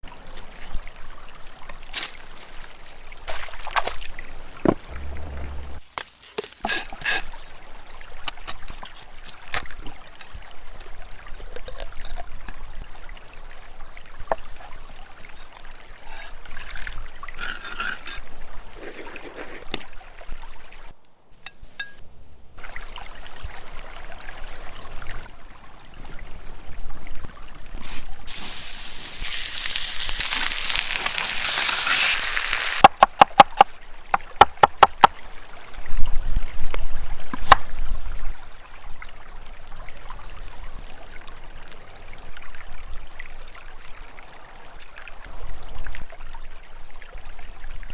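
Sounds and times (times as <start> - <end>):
water trickling and pouring: 7.6 - 21.0, 22.6 - 32.9
knocks and clicks: 32.8 - 35.1.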